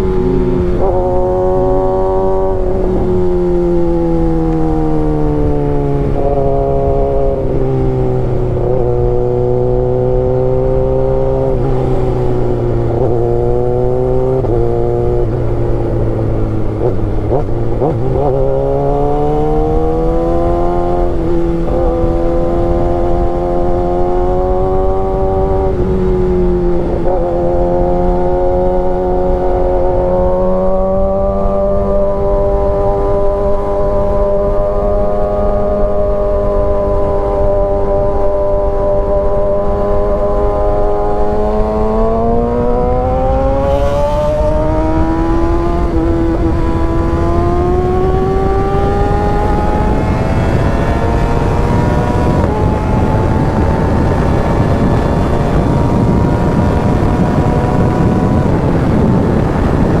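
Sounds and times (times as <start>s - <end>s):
motorcycle engine running: 0.0s - 60.0s.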